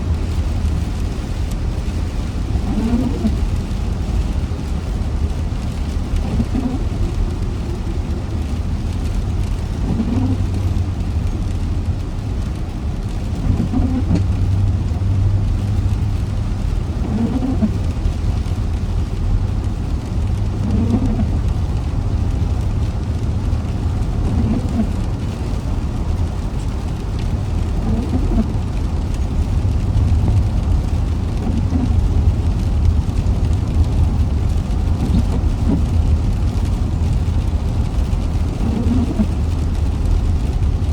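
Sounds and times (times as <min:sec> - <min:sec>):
car road and engine rumble: 0:00.0 - 0:40.9
rain hissing: 0:00.0 - 0:40.9.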